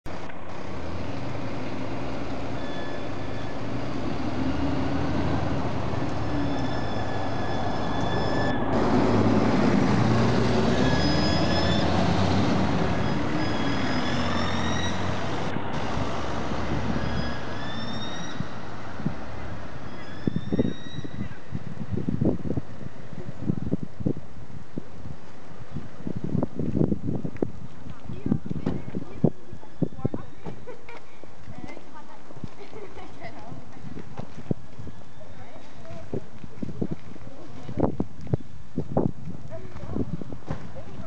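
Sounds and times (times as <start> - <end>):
vehicle engine rumble: 0.0 - 41.0.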